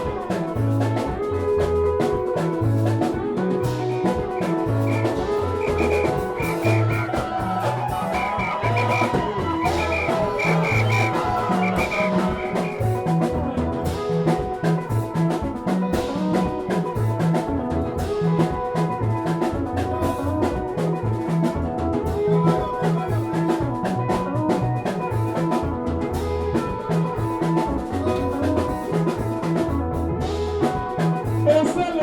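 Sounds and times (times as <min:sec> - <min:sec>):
loud dance music: 0:04.8 - 0:13.0.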